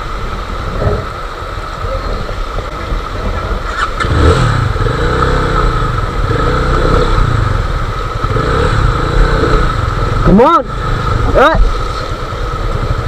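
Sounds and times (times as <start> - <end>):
motorcycle engine revving: 3.6 - 13.0.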